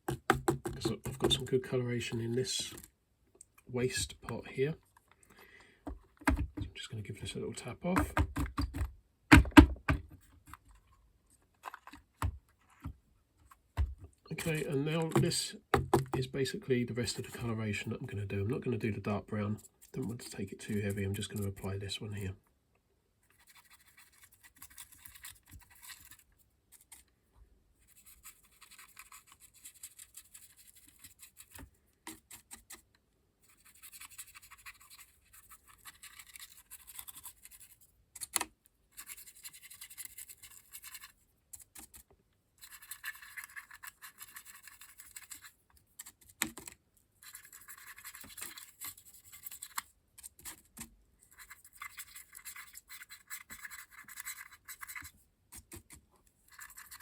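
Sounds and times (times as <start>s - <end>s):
scratchy brush scrubbing: 14.3s - 15.5s, 23.3s - 27.1s, 27.8s - 37.8s, 38.9s - 41.9s, 42.6s - 46.4s, 47.2s - 57.0s.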